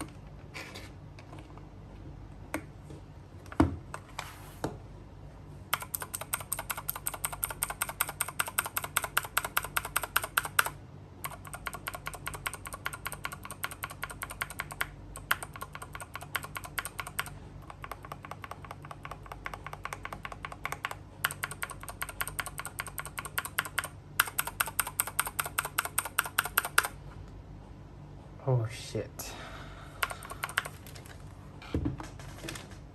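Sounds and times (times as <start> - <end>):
mechanical keyboard typing: 5.7 - 27.0, 30.0 - 31.0.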